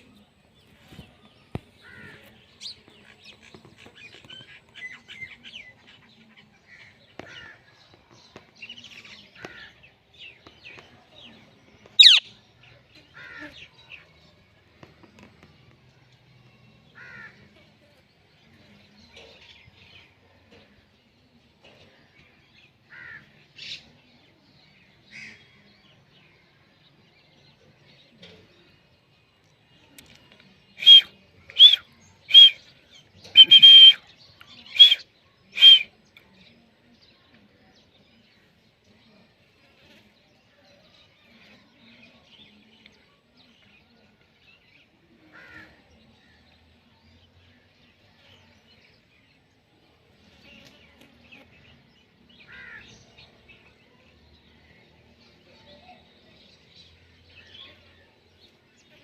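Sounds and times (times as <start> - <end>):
parrot calling: 12.0 - 12.2.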